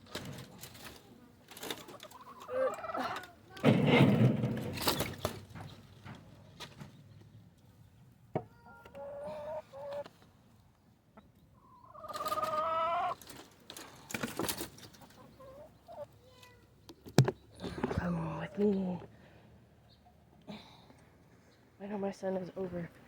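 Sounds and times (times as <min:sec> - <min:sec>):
chickens calling: 0:00.8 - 0:16.2.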